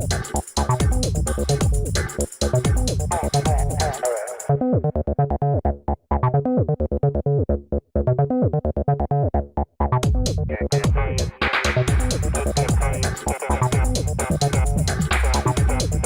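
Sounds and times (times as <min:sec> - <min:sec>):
electronic music with synthesizer: 0:00.0 - 0:05.6, 0:09.6 - 0:16.0.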